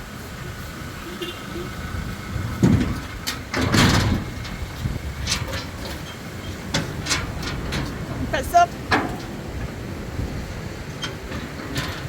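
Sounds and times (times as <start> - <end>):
truck engine running low: 0.0 - 12.0
loud knocks and scraping crashes: 2.4 - 12.0.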